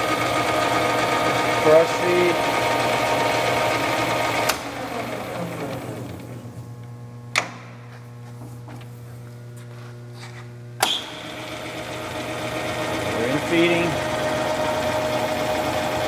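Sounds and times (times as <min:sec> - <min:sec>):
lathe gear train whirring: 0:00.0 - 0:09.4, 0:10.7 - 0:16.0
lathe motor hum: 0:00.0 - 0:16.0.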